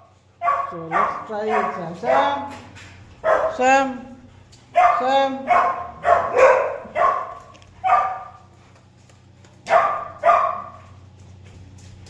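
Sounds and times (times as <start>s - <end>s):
dog barking: 0.0s - 4.0s, 4.7s - 8.5s, 9.7s - 11.0s.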